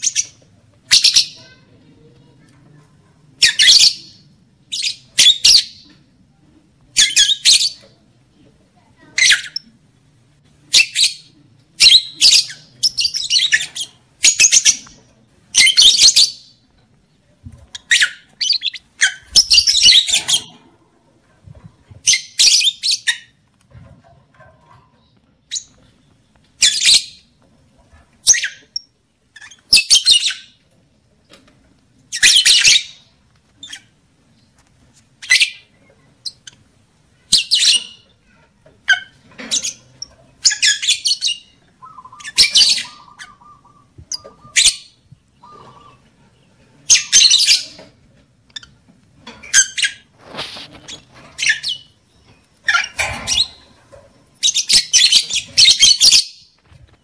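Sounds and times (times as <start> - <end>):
lovebird chirping: 38.9 - 46.0, 49.4 - 53.7, 54.4 - 56.5.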